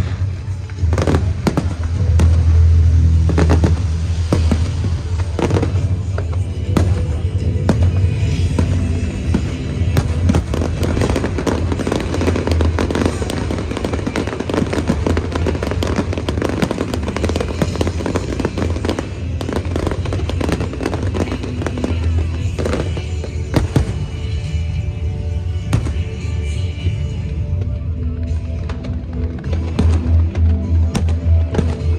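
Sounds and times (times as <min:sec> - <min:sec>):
fireworks bursting and crackling: 0:00.0 - 0:31.9
loud music with bass: 0:00.0 - 0:31.9.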